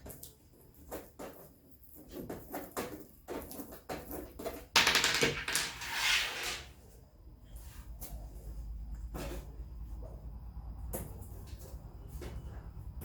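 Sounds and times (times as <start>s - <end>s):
loud rustling scrape: 5.6s - 6.9s.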